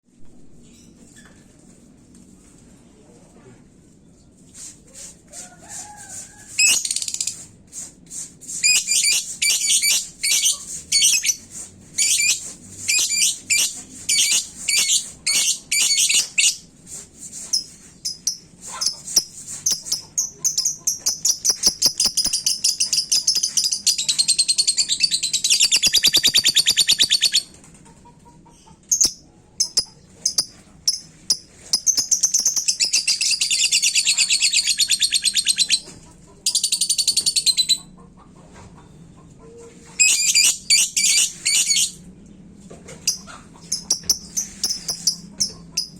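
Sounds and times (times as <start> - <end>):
lovebird calls and trill: 18.0 - 27.5.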